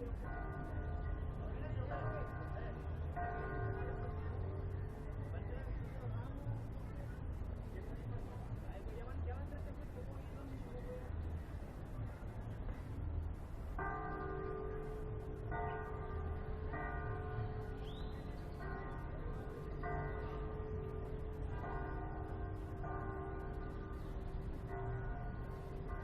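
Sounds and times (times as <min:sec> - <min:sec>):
church bells ringing: 0:00.0 - 0:05.4, 0:13.7 - 0:26.0.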